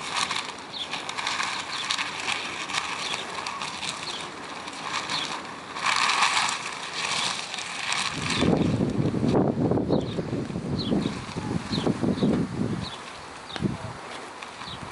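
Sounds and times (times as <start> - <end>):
plastic sheeting rustling and flapping: 0.0 - 14.9
wind blowing: 0.0 - 14.9
small bird chirping: 9.9 - 13.8.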